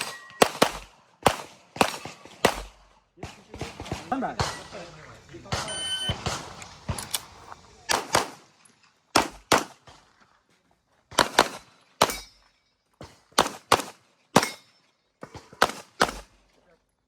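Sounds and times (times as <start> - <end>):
handgun shots in quick pairs: 0.0 - 4.8, 7.9 - 8.4, 9.1 - 10.0, 11.1 - 12.4, 13.3 - 14.7, 15.3 - 16.3.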